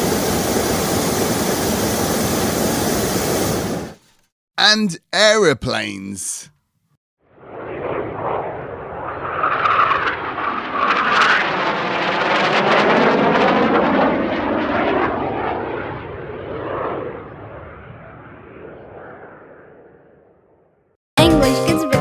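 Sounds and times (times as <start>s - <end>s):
aeroplane flying past: 7.5s - 20.2s.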